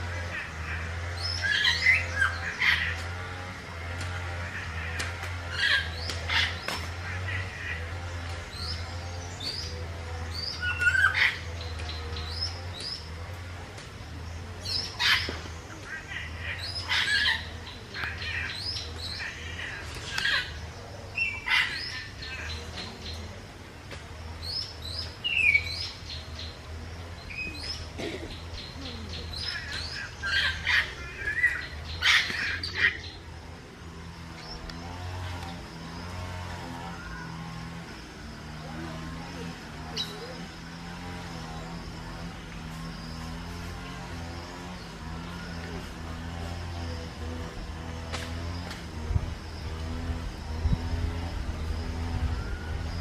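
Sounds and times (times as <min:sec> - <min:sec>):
steady low hum: 0:00.0 - 0:53.0
parrots chirping: 0:14.7 - 0:20.6, 0:21.2 - 0:22.6, 0:28.6 - 0:33.3.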